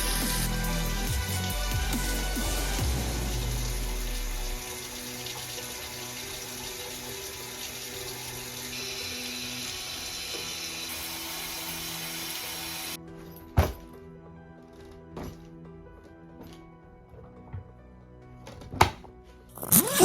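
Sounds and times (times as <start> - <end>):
music: 0.0 - 20.0
heavy low rumble: 1.6 - 4.7
rushing water: 2.1 - 13.0.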